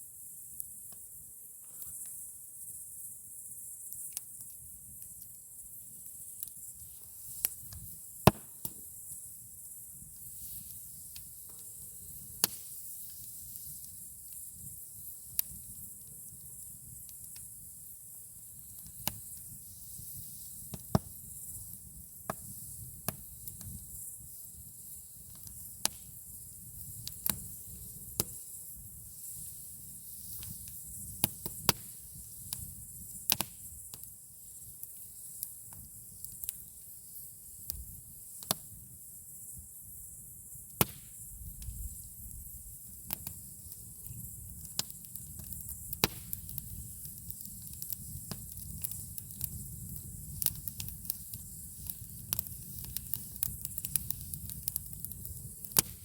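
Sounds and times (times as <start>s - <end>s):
fire low rumble and hiss: 0.0s - 56.0s
campfire crackling and popping: 3.9s - 36.6s, 40.8s - 56.0s.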